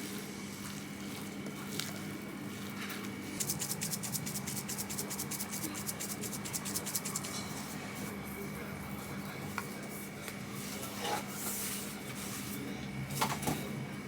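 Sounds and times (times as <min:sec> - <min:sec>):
rhythmic scraping strokes: 0:03.3 - 0:07.6.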